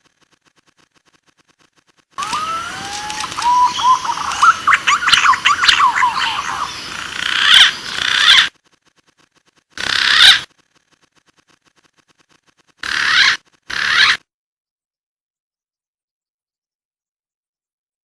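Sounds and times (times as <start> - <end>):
green pigeon calling: 2.2 - 8.5, 9.8 - 10.5, 12.8 - 14.2.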